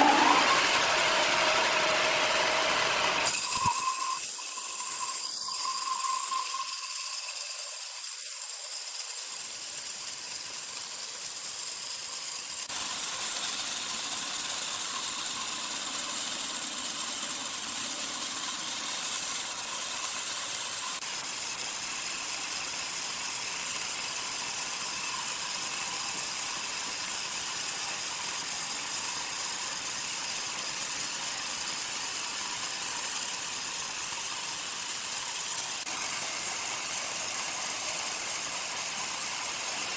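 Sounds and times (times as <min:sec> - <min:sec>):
sawmill machinery hissing: 0:00.0 - 0:39.9.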